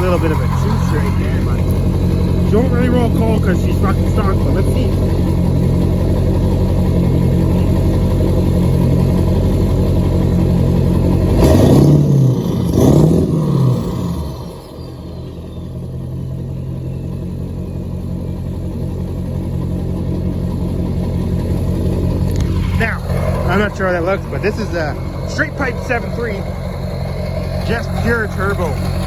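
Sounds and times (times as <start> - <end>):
turbo whistle winding down: 0.0 - 5.9
diesel engine idling and revving: 0.0 - 29.0.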